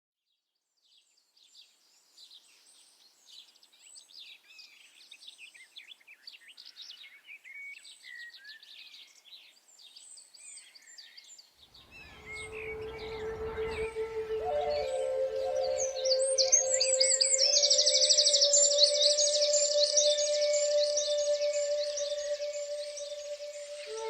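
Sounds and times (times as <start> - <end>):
songbirds chirping and trilling: 1.4 - 24.0
soft music: 12.1 - 24.0.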